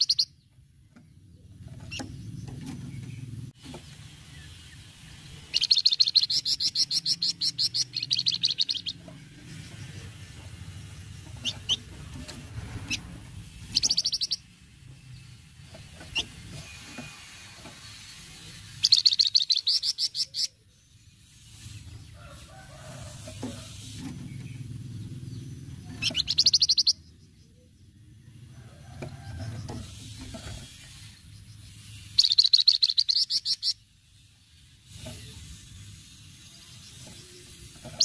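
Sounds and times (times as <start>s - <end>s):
songbird rattling call: 0.0s - 0.4s, 1.8s - 27.0s, 29.3s - 38.0s
bird chirps: 0.0s - 1.1s, 1.8s - 12.0s, 12.8s - 21.8s, 24.3s - 28.0s, 30.6s - 34.3s.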